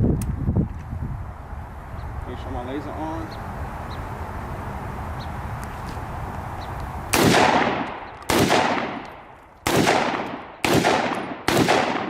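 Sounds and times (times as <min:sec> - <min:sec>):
pistol shots echoing: 0:07.1 - 0:12.0.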